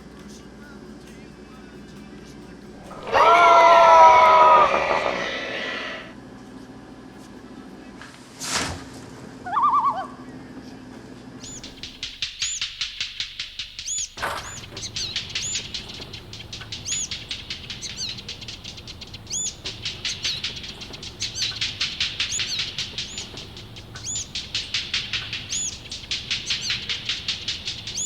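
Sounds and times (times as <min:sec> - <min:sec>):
fast wing flapping: 0:02.8 - 0:06.1, 0:11.4 - 0:28.0
high screeching bird calls: 0:02.8 - 0:06.1, 0:11.4 - 0:28.0.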